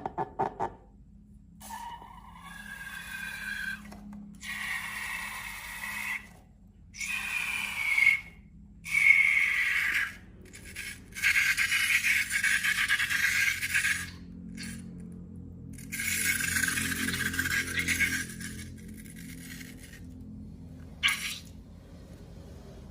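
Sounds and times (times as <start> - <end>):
air squealing out of balloon: 21.0 - 21.5.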